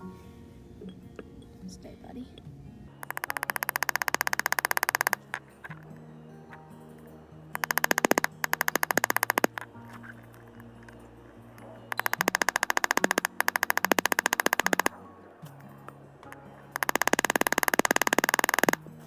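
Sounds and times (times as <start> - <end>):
rapid repeated synth notes: 7.5 - 9.6, 11.9 - 14.9, 16.7 - 18.8.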